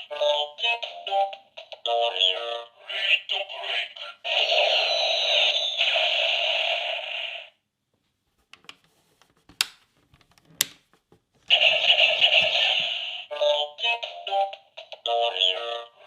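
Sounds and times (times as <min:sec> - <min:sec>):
toy belt electronic sound effects: 0:04.2 - 0:07.5, 0:11.5 - 0:13.3.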